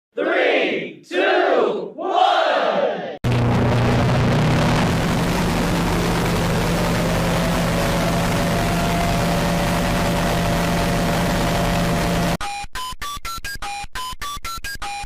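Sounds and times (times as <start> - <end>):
loud steady roar: 3.2 - 12.4
low hum: 3.2 - 12.4
rising pitched tones: 3.2 - 12.4.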